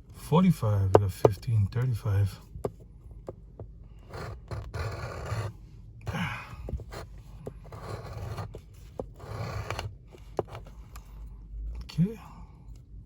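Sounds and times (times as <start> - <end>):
coin scratching lottery ticket: 4.0 - 5.6, 6.8 - 10.7.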